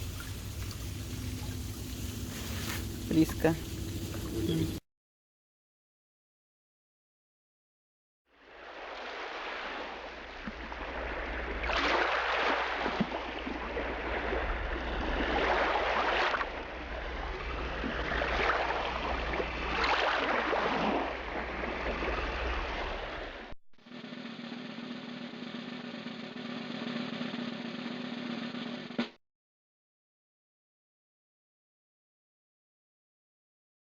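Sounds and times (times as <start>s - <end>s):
low hum: 0.0s - 4.8s, 9.2s - 29.1s
waterfall roaring: 0.0s - 4.8s.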